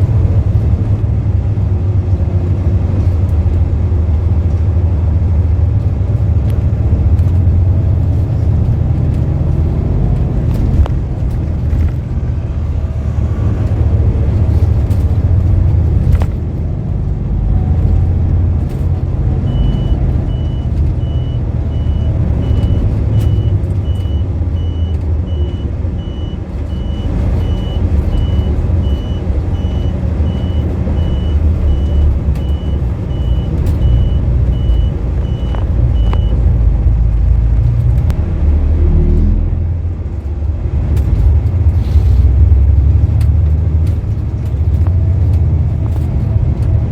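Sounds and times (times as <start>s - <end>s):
bus engine and road rumble: 0.0s - 46.9s
high electronic beeps: 19.5s - 36.4s.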